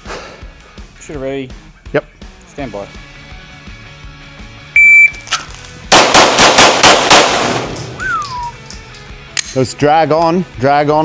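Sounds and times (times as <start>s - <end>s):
electronic shot timer beep: 4.8s - 5.2s
pistol shots: 5.9s - 8.6s.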